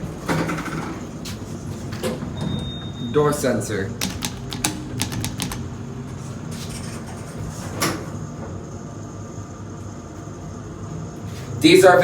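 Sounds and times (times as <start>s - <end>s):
elevator doors sliding: 0.0s - 9.2s
steady low hum: 0.0s - 12.0s.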